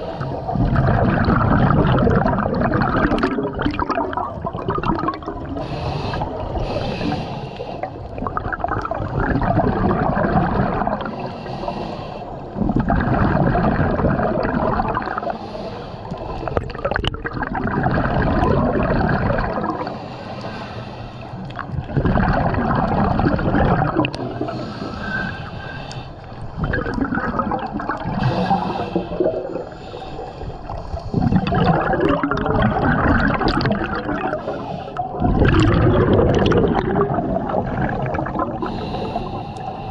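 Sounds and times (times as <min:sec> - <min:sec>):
bubbling exhalation underwater: 0:00.0 - 0:05.6, 0:07.9 - 0:11.2, 0:12.6 - 0:15.3, 0:16.6 - 0:19.9, 0:21.6 - 0:24.6, 0:26.6 - 0:29.7, 0:31.1 - 0:38.9
regulator inhalation hiss: 0:05.6 - 0:07.8, 0:11.2 - 0:12.4, 0:24.5 - 0:26.4, 0:28.2 - 0:31.1, 0:38.6 - 0:39.9.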